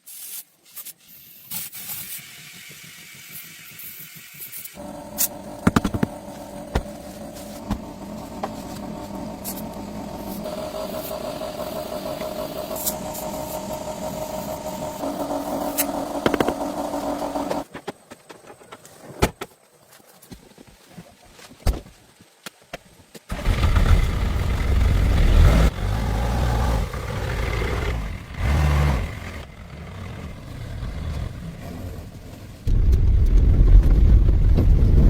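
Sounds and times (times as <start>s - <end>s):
truck engine running: 4.8s - 17.6s, 23.3s - 32.6s.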